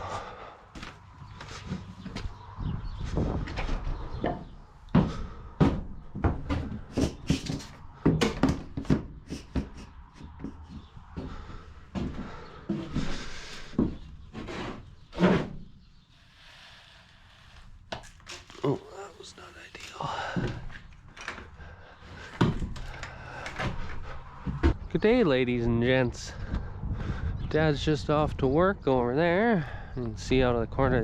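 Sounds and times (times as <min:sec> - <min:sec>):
knocks and thumps: 0:03.0 - 0:11.4, 0:22.2 - 0:24.9.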